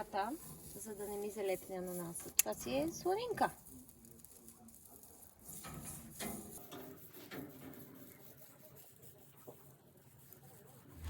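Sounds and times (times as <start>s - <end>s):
bacon scraping on grill grate: 0.0s - 4.6s, 5.3s - 6.7s.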